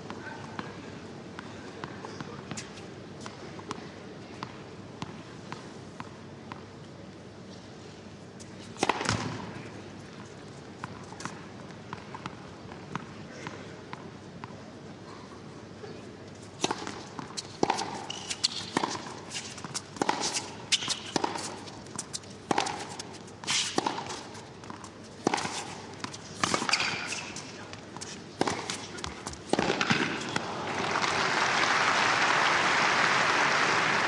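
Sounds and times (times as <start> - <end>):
tennis rackets hitting ball: 8.8 - 9.5, 16.6 - 31.2
crowd applause: 30.4 - 34.0.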